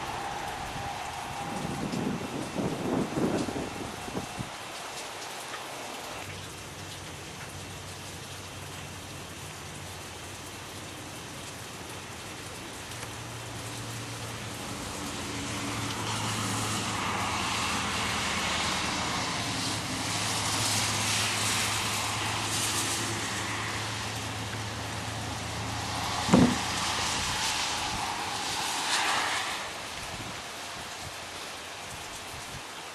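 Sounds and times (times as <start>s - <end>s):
steady rain hiss: 0.0s - 32.9s
low engine hum: 12.5s - 27.4s.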